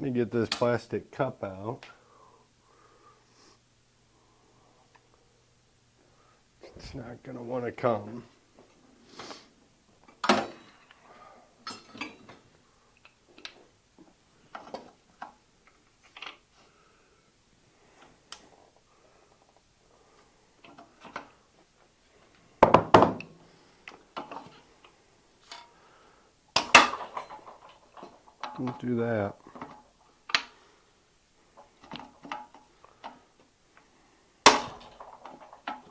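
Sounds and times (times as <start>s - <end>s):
metal tools knocking on bike frame: 22.6s - 23.3s.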